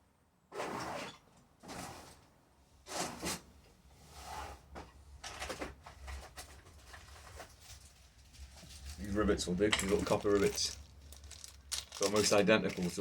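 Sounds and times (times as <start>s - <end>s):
rummaging through small hardware: 5.2s - 13.0s.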